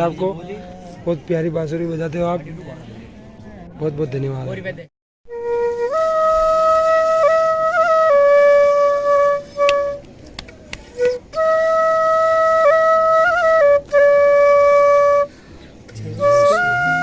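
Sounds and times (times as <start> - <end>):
bamboo flute with trills: 5.3 - 17.0.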